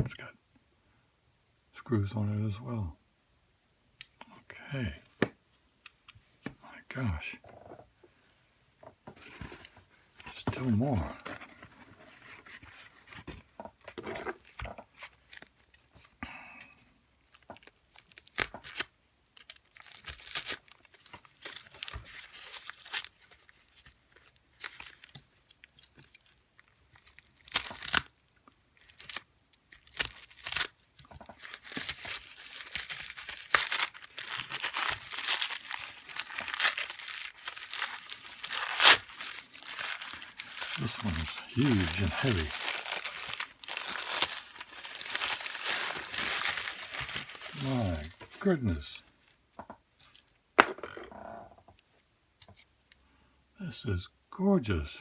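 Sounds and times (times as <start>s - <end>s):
packing wrapping tearing and crumpling: 17.2s - 49.4s.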